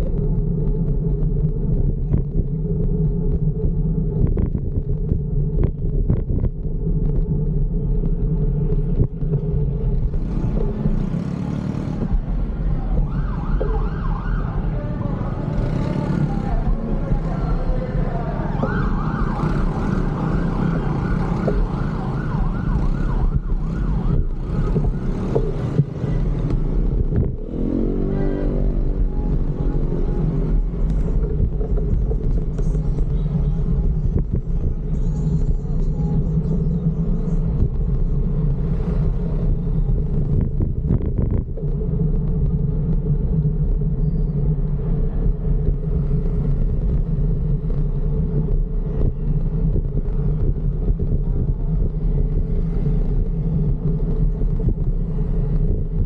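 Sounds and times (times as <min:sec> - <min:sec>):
road traffic rumble: 0:00.0 - 0:56.0
siren wailing: 0:12.5 - 0:25.5.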